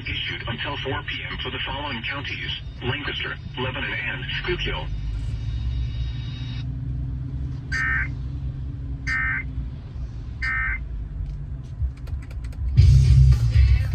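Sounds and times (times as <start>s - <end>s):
low rumble: 2.6s - 13.9s
warbling two-tone data bursts: 7.7s - 8.1s, 9.1s - 9.5s.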